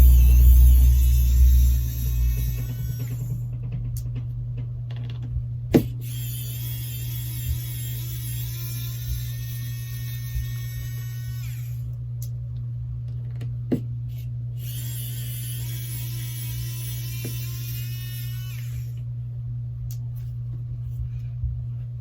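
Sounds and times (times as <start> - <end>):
low electrical hum: 0.0 - 22.0
electric screwdriver whining: 6.0 - 11.8, 14.6 - 19.0.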